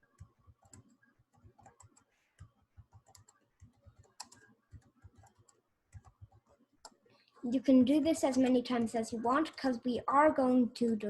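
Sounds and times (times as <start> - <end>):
faint computer keyboard clicks: 0.2 - 7.0.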